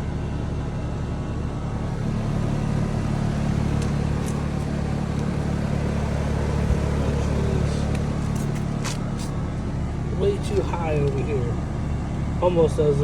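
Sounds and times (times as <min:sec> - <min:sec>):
air conditioner humming: 0:01.6 - 0:11.7.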